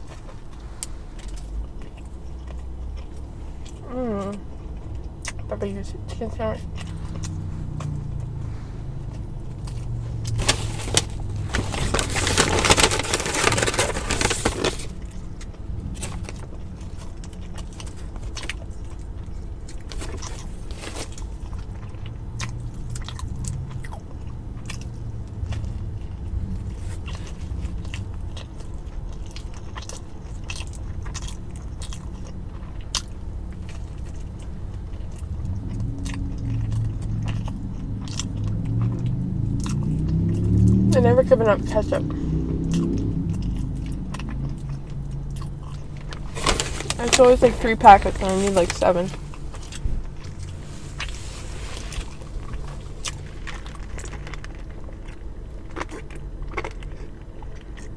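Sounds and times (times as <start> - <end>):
biting and chewing: 0.0 - 41.0, 41.7 - 57.9
steady low hum: 0.0 - 57.9
loud rustling: 10.0 - 15.0, 46.1 - 53.6.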